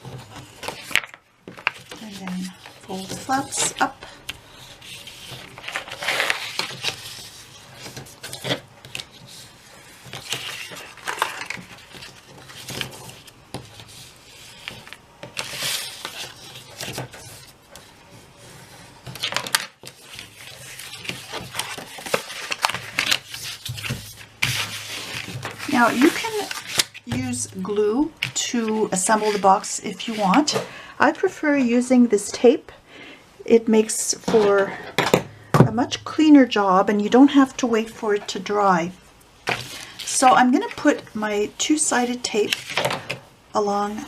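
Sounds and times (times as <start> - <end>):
paper crinkling and rustling: 0.0 - 30.6.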